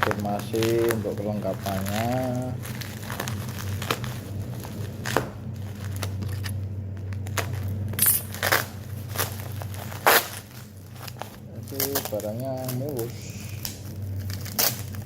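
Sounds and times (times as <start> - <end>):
plastic packaging crinkling: 0.0 - 15.0
steady low hum: 0.0 - 15.0.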